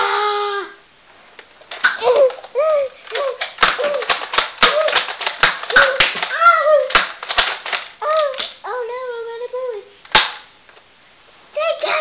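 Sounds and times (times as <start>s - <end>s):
child crying and squealing: 0.0s - 0.8s
sharp clicks and knocks: 1.4s - 8.6s.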